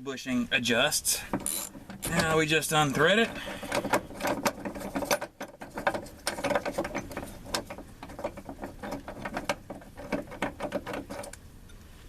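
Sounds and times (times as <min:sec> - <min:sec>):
ratchet clicking: 0:01.4 - 0:02.2.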